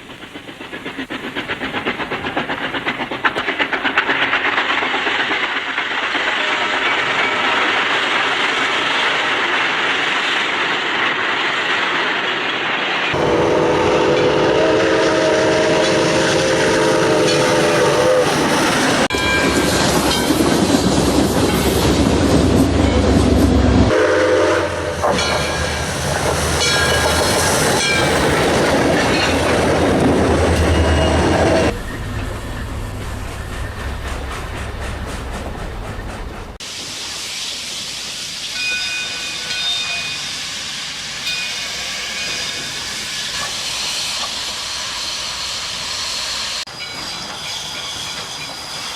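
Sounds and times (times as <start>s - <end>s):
train running: 0.0s - 48.9s
locomotive horn chord: 13.2s - 18.5s, 23.9s - 25.2s.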